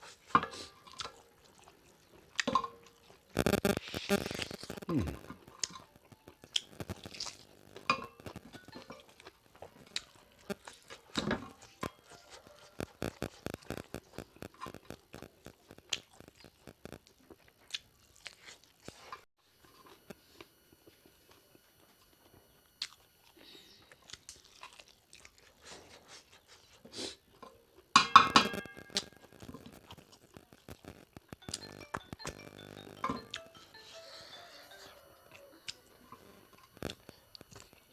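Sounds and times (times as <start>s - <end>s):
chewing and smacking: 0.0s - 27.9s
loud burst of noise: 3.4s - 5.4s.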